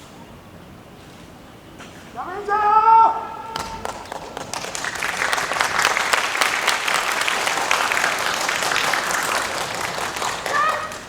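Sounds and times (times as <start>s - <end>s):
audience applauding: 3.6s - 11.0s.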